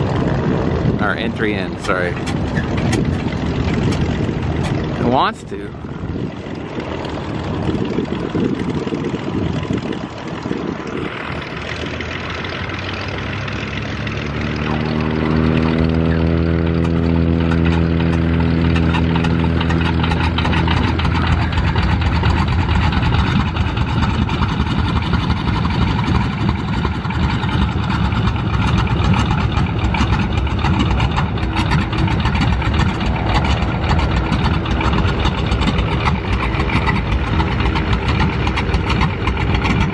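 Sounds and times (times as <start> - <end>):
radial engine running: 0.0 - 39.9
inertia starter cranking: 1.8 - 4.9, 16.7 - 39.9.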